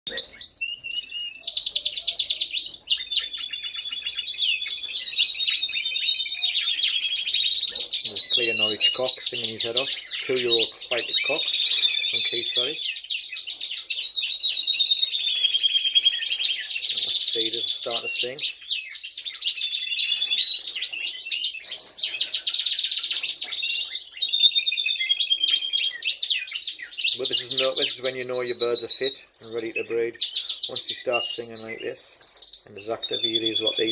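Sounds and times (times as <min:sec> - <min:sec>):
canary singing trills: 0:00.0 - 0:33.9.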